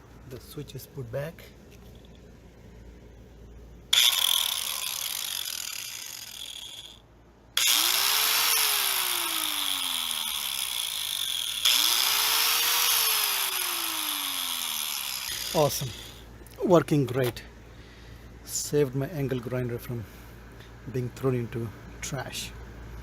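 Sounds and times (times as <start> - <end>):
angle grinder whirring: 3.9 - 16.3.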